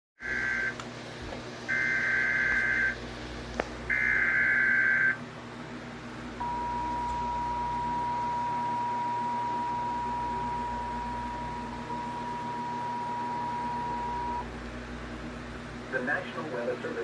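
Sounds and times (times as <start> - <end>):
screeching digital data bursts: 0.2 - 0.7, 1.7 - 3.0, 3.9 - 5.2
two-tone alert signal: 6.4 - 14.4.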